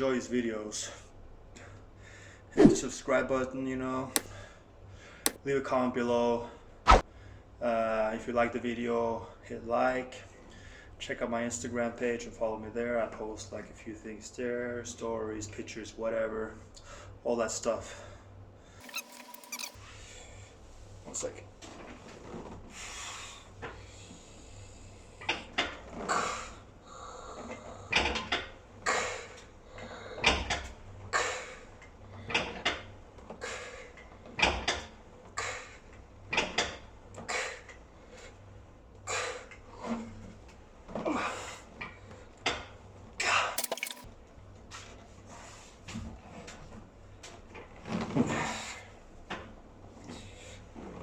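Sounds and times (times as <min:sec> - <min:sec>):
gym machine moving: 0:18.8 - 0:19.8.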